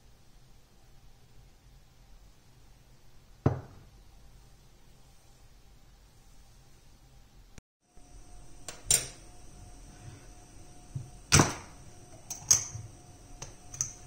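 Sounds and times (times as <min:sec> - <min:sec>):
high-pitched whine: 0:07.9 - 0:13.9.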